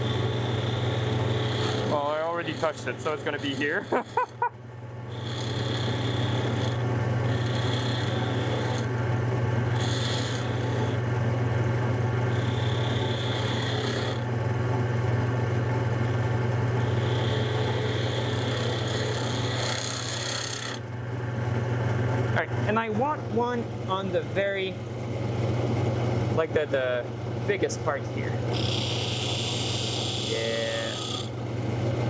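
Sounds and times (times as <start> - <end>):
turning tool scraping wood: 0.0 - 4.4, 5.1 - 21.6, 27.5 - 31.4
wood lathe humming: 0.0 - 32.0.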